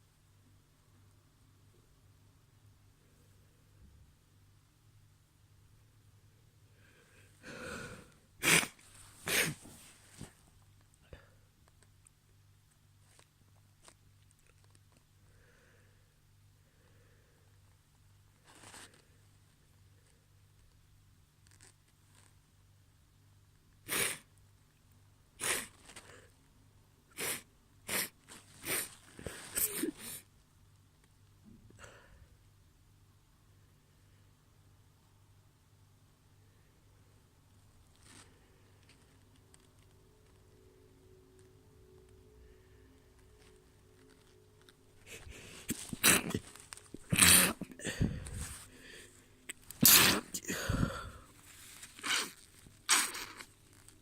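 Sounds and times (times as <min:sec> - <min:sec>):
person breathing: 0:06.6 - 0:10.3, 0:15.2 - 0:17.6, 0:31.7 - 0:32.4, 0:45.0 - 0:49.5, 0:50.2 - 0:52.3
stifled sneezes: 0:08.4 - 0:10.3, 0:23.8 - 0:24.3, 0:25.4 - 0:26.0, 0:27.1 - 0:30.3, 0:45.0 - 0:48.6, 0:49.5 - 0:51.2, 0:51.9 - 0:53.5.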